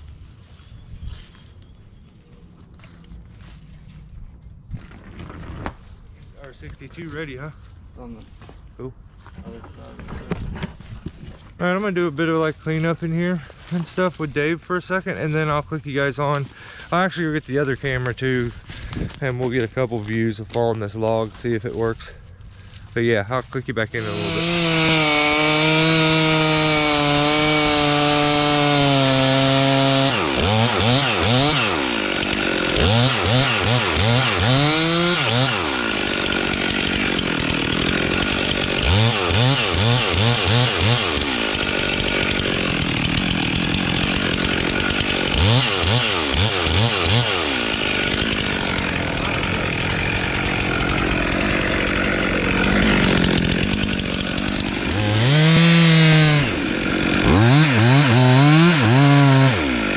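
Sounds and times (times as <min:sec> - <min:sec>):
chainsaw revving and cutting wood: 0:12.7 - 0:59.9.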